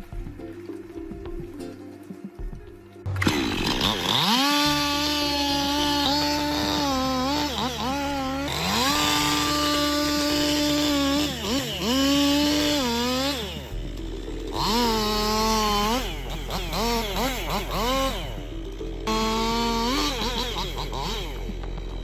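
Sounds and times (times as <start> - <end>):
chainsaw engine revving: 3.1 - 22.0.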